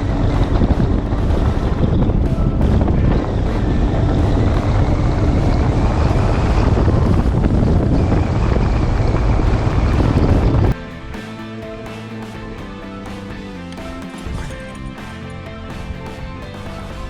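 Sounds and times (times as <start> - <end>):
boat engine and hull noise: 0.0 - 10.8
wind buffeting microphone: 0.0 - 10.8.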